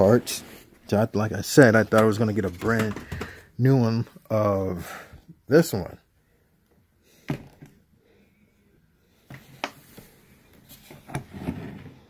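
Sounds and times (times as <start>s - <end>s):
plastic parts knocking: 2.5s - 3.5s.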